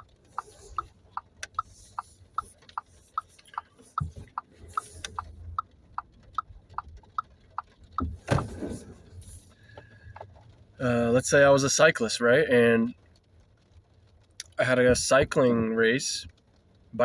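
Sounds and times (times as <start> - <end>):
turn signal clicking: 0.0 - 10.6
low cabin rumble: 0.0 - 13.4, 14.0 - 17.0.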